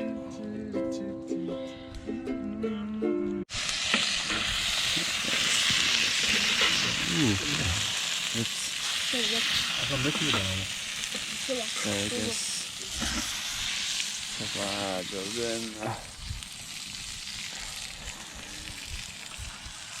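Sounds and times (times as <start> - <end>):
ukulele music: 0.0 - 3.5
food sizzling in a pan: 3.5 - 20.0.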